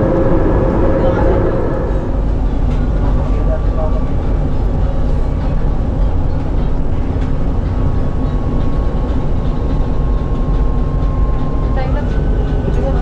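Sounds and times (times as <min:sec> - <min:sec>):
faint whine: 0:00.0 - 0:03.4
train low rumble: 0:00.0 - 0:13.0.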